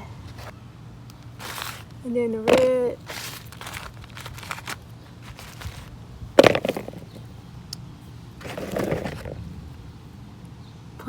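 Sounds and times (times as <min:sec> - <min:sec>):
potatoes clattering: 0:01.2 - 0:07.4, 0:08.4 - 0:09.6.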